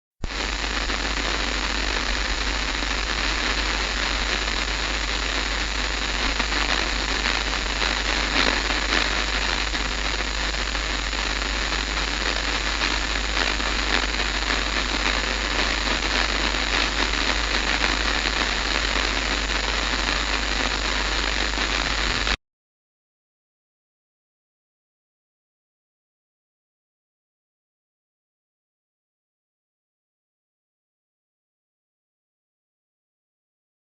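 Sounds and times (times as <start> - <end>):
electronic static hiss: 0.2 - 22.4.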